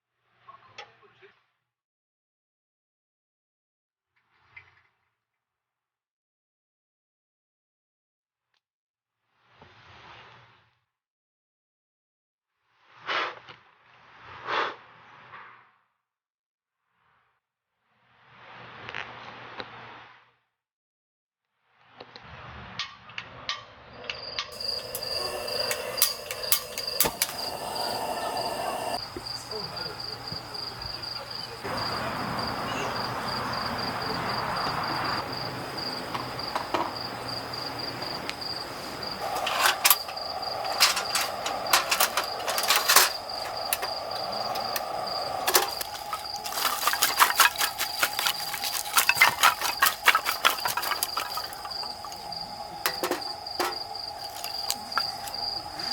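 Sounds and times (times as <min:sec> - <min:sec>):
cricket chirping: 0:24.0 - 0:55.9.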